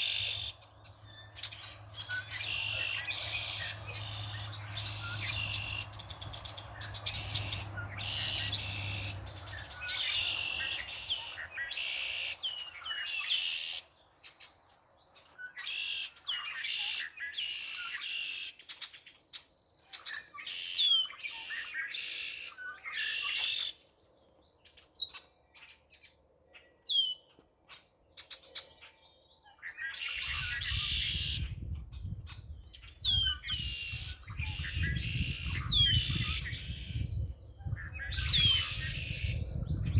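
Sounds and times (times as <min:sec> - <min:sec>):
sharp bird chirps: 0:00.0 - 0:14.5, 0:28.2 - 0:39.9
songbirds singing: 0:00.0 - 0:39.9.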